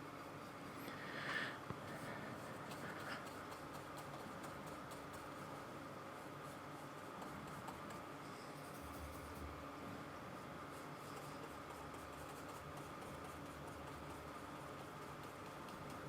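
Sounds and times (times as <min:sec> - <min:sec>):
low steady hum: 0:00.0 - 0:16.0
paintbrush scratching on canvas: 0:02.0 - 0:09.4, 0:10.6 - 0:16.0.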